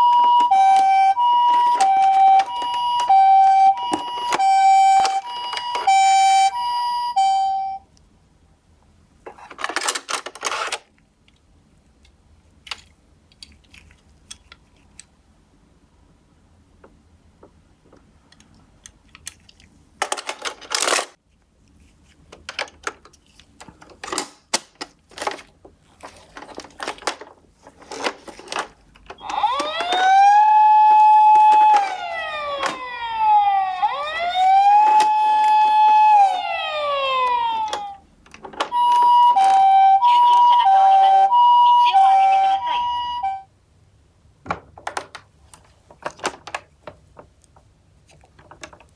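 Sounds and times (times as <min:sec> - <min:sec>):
toy electronic siren: 0:00.0 - 0:07.8, 0:29.2 - 0:38.0, 0:38.7 - 0:43.5
plastic toy cars rattling: 0:00.1 - 0:06.0, 0:09.3 - 0:10.9, 0:18.8 - 0:21.2, 0:22.3 - 0:40.5, 0:44.5 - 0:48.9.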